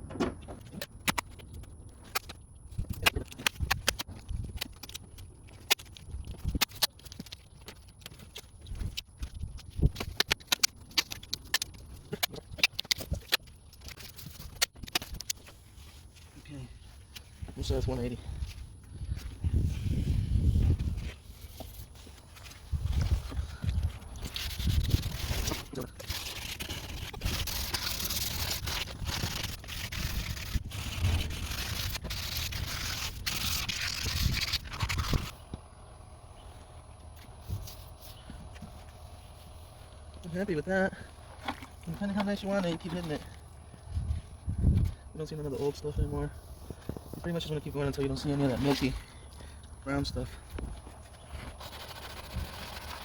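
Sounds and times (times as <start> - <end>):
tape clicks and crackles: 0.1 - 15.6, 21.5 - 35.8
sandpaper scraping plastic: 21.2 - 35.4, 45.4 - 49.0, 51.1 - 53.0.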